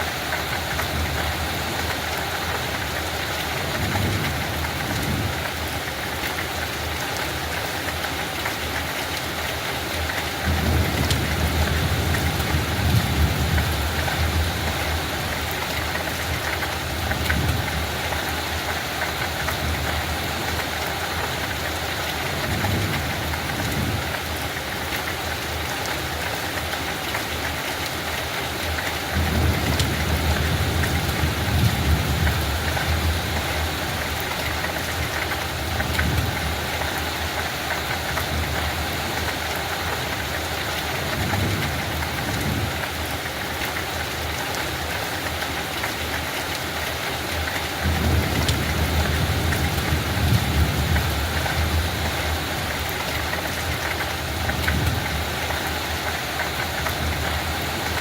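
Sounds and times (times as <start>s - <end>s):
light rain falling: 0.0s - 58.0s.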